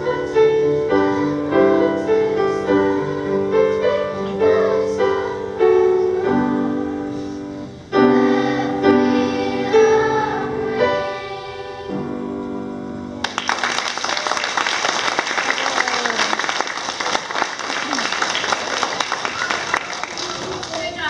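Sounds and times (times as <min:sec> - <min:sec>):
children singing: 0:00.0 - 0:07.1, 0:08.0 - 0:12.2
piano chords: 0:00.0 - 0:15.2
applause: 0:13.2 - 0:21.0.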